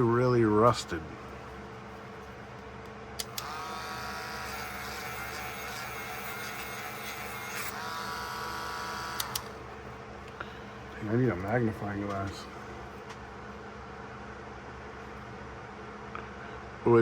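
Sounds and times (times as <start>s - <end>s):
motorised wire brush whirring: 3.2s - 9.7s
wire brush switch click: 9.1s - 9.6s.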